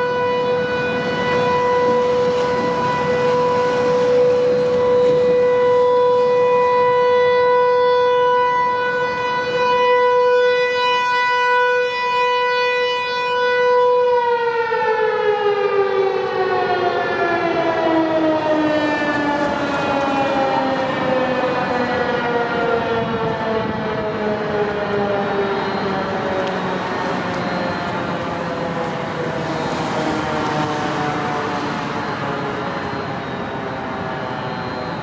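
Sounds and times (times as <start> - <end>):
warning siren winding down: 0.0 - 35.0.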